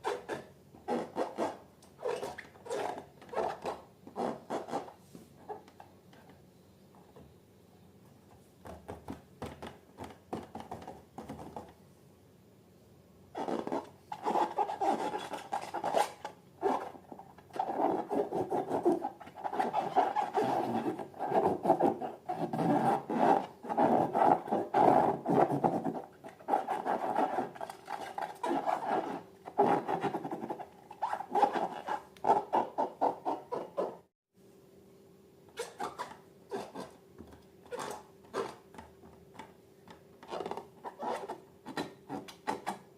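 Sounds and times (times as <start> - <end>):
rubbing and scraping of balloons: 0.0 - 5.7, 13.4 - 34.1.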